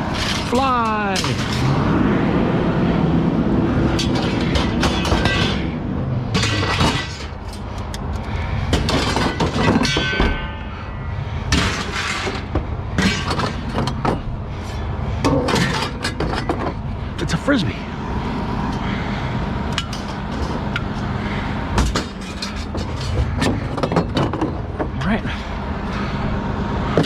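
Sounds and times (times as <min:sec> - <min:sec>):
scrap metal clanging: 0:06.3 - 0:16.9, 0:21.8 - 0:24.6.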